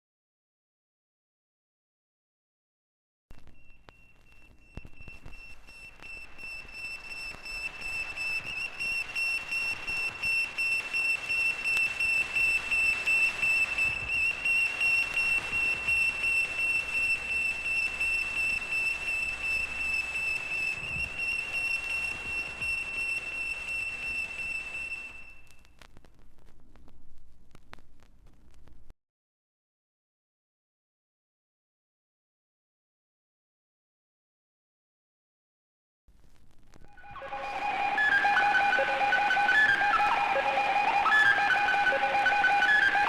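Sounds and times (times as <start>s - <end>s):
high pulsing whistle tone: 3.4s - 25.5s, 36.9s - 43.0s.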